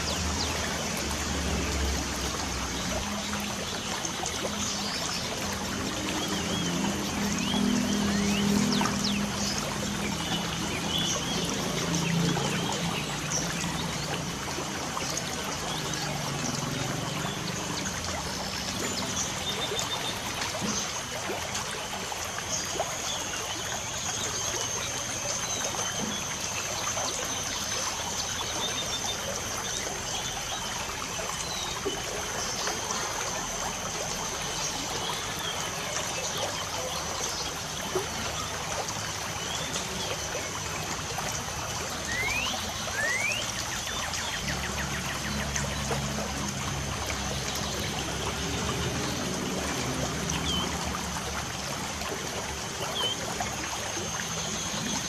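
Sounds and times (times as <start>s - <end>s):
birds chirping: 41.5s - 46.4s.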